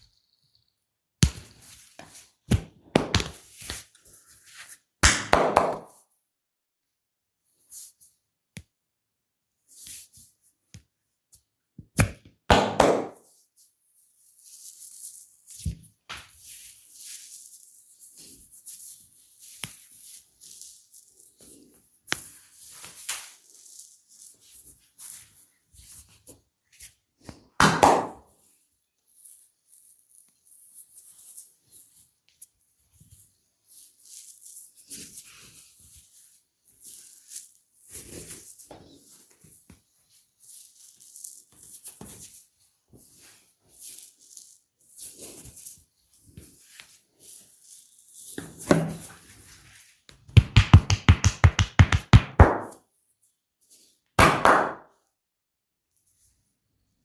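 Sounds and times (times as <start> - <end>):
rubbing strokes on skin: 13.4 - 15.6, 16.4 - 26.9, 29.1 - 48.4
soft rustling: 28.9 - 50.1
hands tapping on skin: 50.2 - 52.8.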